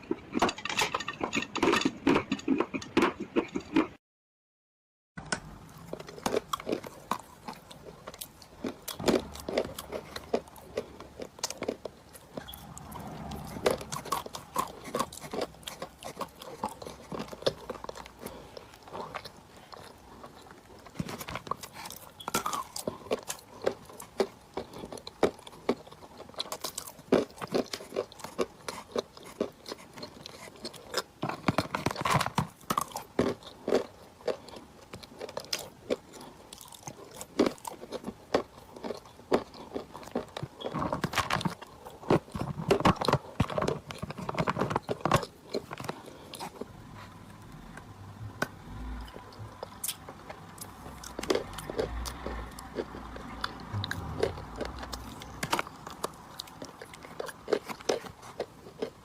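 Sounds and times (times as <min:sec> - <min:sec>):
crunching and chewing chalk: 0:00.0 - 0:04.0, 0:05.2 - 0:59.0.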